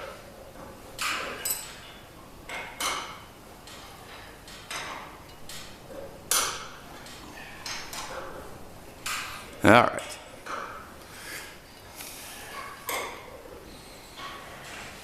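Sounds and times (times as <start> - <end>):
sharp clicks and knocks: 0.6 - 9.4.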